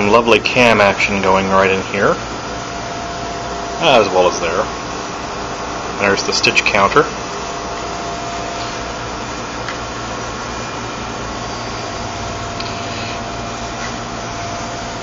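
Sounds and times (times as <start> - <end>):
embroidery machine whirring: 0.0 - 15.0.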